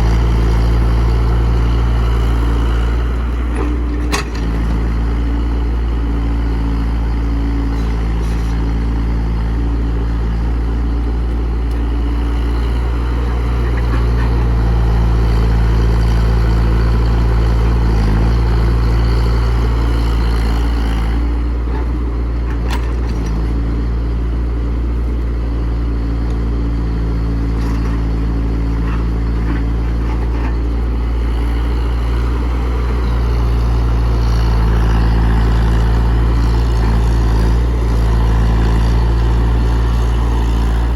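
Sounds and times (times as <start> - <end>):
excavator diesel engine running: 0.0 - 40.9.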